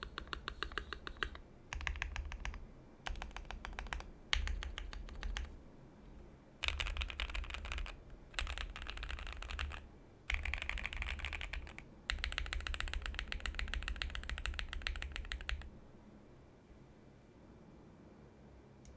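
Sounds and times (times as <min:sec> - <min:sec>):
typing on mechanical keyboard: 0:00.0 - 0:05.5, 0:06.6 - 0:15.7.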